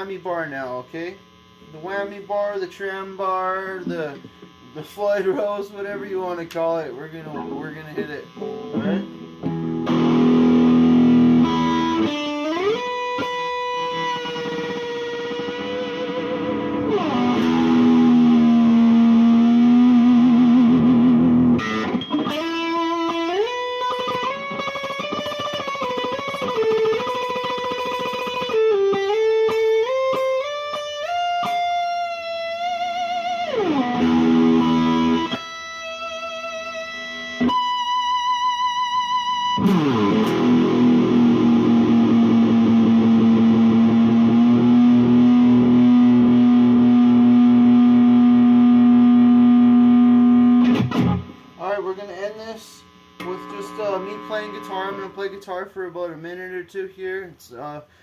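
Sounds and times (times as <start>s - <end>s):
electric guitar with tremolo bar: 7.0s - 55.6s.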